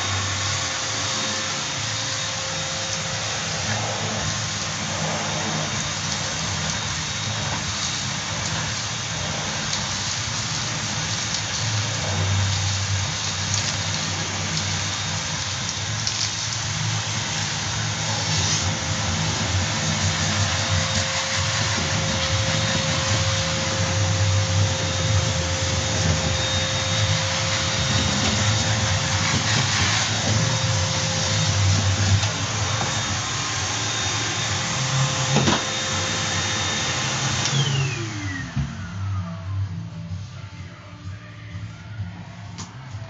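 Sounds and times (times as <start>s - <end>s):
vacuum motor spinning down: 0.0s - 39.9s
vacuum cleaner running: 0.0s - 43.0s.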